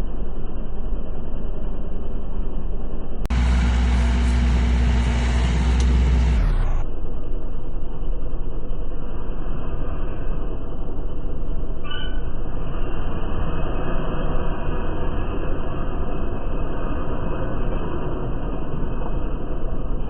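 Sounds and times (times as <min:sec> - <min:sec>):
harvesting machine engine rumbling: 0:03.3 - 0:06.8.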